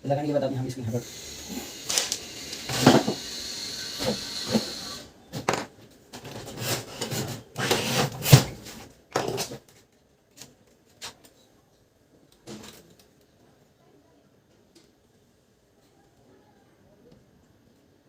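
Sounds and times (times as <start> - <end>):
steady hiss with high whine: 0.0 - 5.4.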